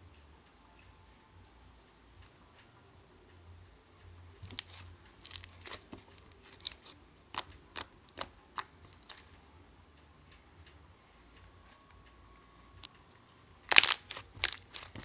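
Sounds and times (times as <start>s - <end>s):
slime popping and clicking: 4.4s - 9.3s, 13.7s - 15.0s.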